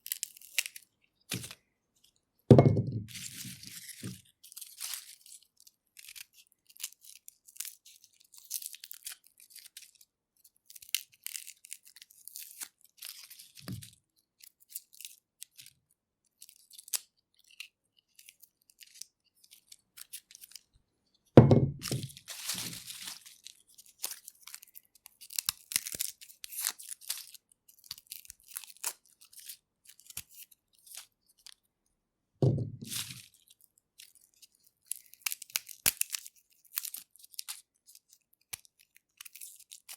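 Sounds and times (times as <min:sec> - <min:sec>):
dull knocks: 0:02.5 - 0:03.0, 0:21.4 - 0:22.1, 0:32.4 - 0:32.9
garlic skins crackling: 0:21.8 - 0:31.5.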